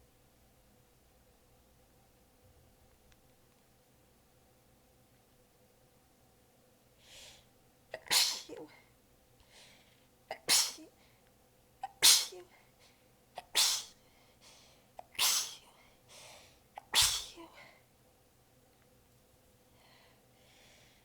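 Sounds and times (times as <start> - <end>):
soft breaths: 6.9 - 7.6, 8.6 - 10.2, 13.9 - 15.0, 15.6 - 17.9, 19.6 - 21.0
person sneezing: 8.0 - 8.8, 10.3 - 11.0, 11.9 - 12.6, 13.4 - 14.0, 15.0 - 15.7, 16.8 - 17.7.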